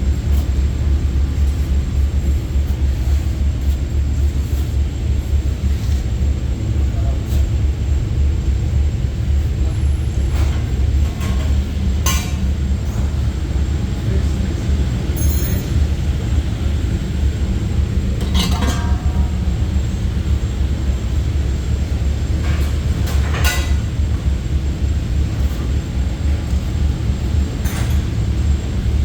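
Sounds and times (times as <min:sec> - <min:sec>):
machine low mechanical hum: 0:00.0 - 0:29.0
metallic clinks: 0:15.2 - 0:15.9.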